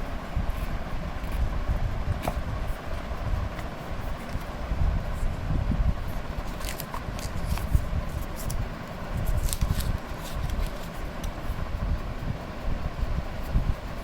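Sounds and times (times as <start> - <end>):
steady low rumble: 0.0 - 14.0
packaging clicks and rustles: 6.4 - 8.6, 9.2 - 11.0.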